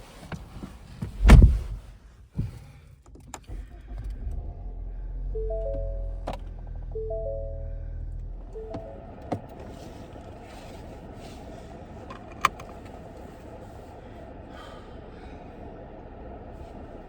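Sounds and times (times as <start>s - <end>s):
low rumble: 3.6s - 9.1s
rising electronic chime: 5.4s - 6.3s, 6.9s - 8.0s.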